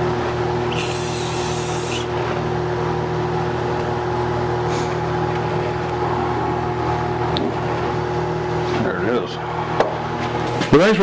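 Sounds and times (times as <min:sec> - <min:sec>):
shop motor humming: 0:00.0 - 0:11.0
spray hiss: 0:00.7 - 0:02.1.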